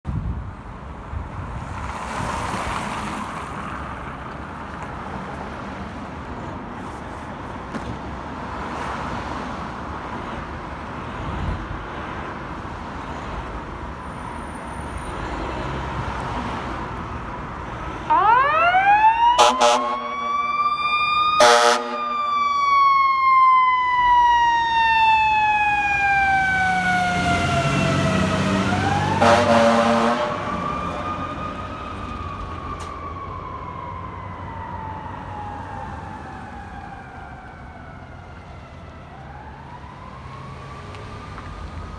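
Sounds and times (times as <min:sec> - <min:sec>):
traffic and road noise: 0:00.0 - 0:41.9
fire truck siren wailing: 0:18.0 - 0:41.9
deep air horn blasts: 0:18.1 - 0:22.6, 0:28.8 - 0:30.7.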